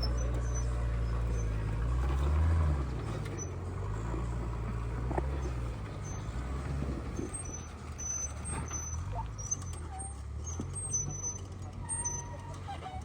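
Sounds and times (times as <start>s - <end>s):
short high-pitched squeaks: 0.0s - 3.6s, 5.4s - 6.4s, 7.2s - 13.0s
truck engine running at low revs: 0.0s - 13.0s.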